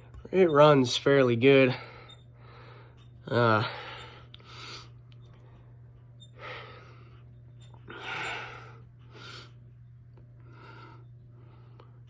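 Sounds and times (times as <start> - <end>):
steady low hum: 0.0 - 12.0
person breathing: 1.8 - 5.0.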